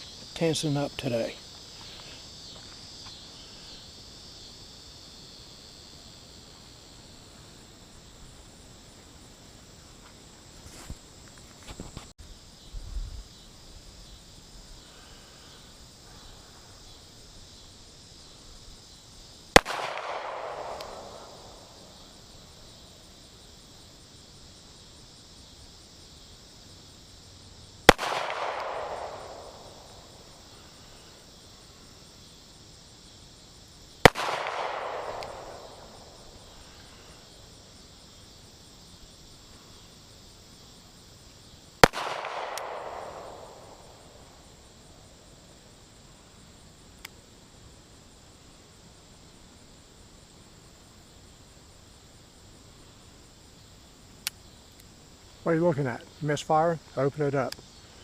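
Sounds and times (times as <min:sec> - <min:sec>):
insects buzzing: 0:00.0 - 0:58.0
handgun shots with echo: 0:19.6 - 0:21.2, 0:27.9 - 0:29.5, 0:34.1 - 0:35.6, 0:41.8 - 0:43.6.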